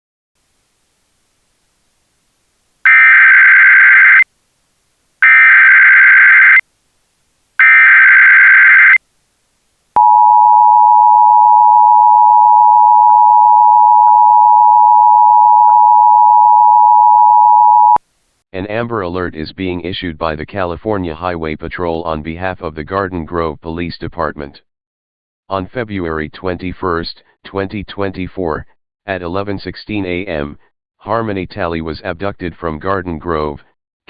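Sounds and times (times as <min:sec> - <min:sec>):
data tone bursts: 0:10.0 - 0:18.0
two-tone attention signal: 0:10.0 - 0:18.0.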